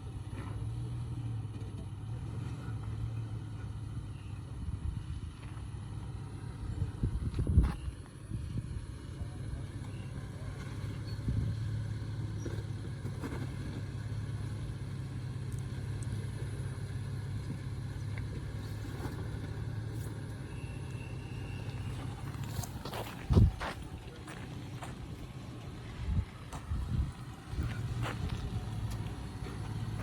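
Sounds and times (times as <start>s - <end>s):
car engine running: 0.0s - 30.0s.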